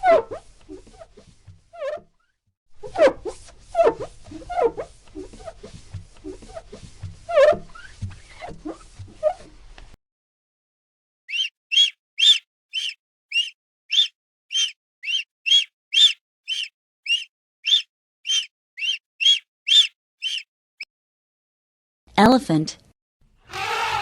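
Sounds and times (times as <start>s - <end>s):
bird chirping: 11.3s - 20.5s.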